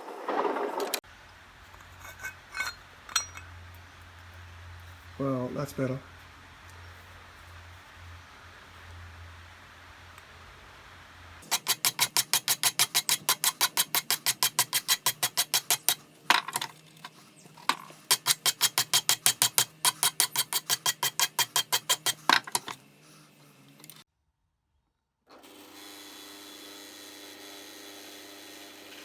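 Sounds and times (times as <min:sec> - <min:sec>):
brush scrubbing metal wrench: 0:01.7 - 0:03.5, 0:11.4 - 0:24.0
scraping: 0:01.8 - 0:03.5, 0:11.4 - 0:24.0.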